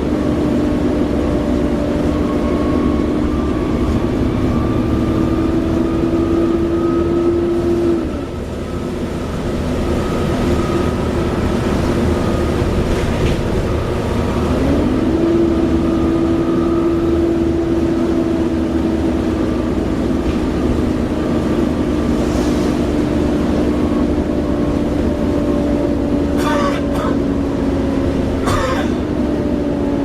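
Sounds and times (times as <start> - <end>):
engine whining tone: 0.0 - 20.0
locomotive diesel engine running: 0.0 - 30.0.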